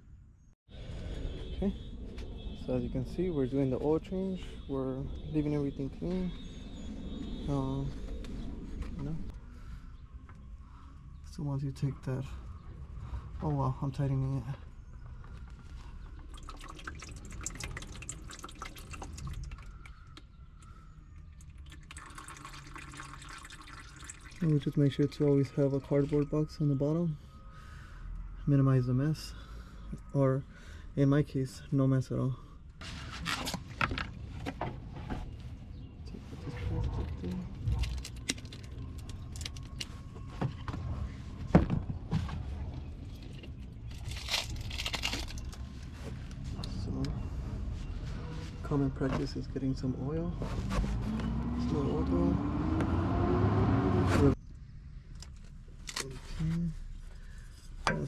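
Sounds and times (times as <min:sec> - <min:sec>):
oil dripping into pan: 0:16.2 - 0:20.2, 0:21.3 - 0:24.4
rustling and crinkling: 0:32.8 - 0:46.8.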